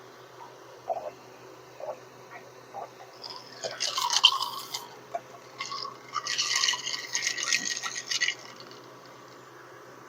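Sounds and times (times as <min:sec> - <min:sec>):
wet crackly eating sounds: 0:01.8 - 0:09.4.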